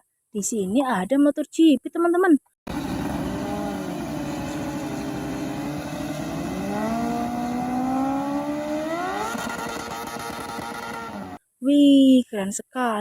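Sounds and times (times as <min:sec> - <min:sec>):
racing motorcycle engine revving: 0:02.7 - 0:11.4.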